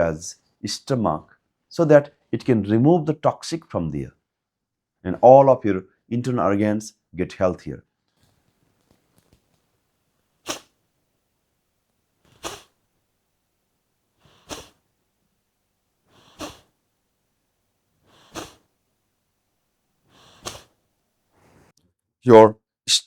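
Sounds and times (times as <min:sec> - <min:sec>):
sharp nasal exhalations: 0:10.4 - 0:10.8, 0:12.2 - 0:12.9, 0:14.1 - 0:14.9, 0:16.0 - 0:16.9, 0:18.0 - 0:18.8, 0:20.0 - 0:21.7.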